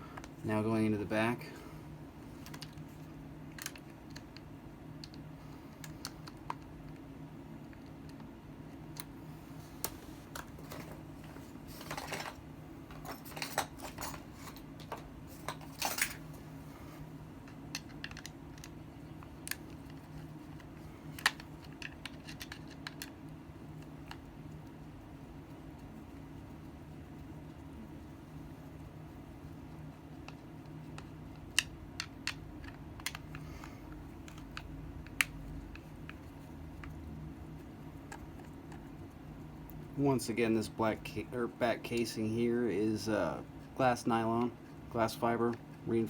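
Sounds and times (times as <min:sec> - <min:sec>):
steady low hum: 0:00.0 - 0:46.0.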